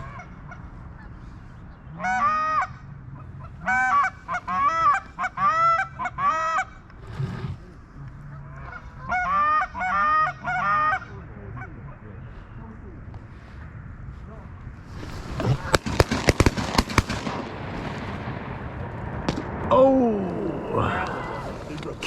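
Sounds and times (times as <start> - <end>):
geese honking: 0.0 - 6.9, 8.2 - 12.6, 14.9 - 17.3.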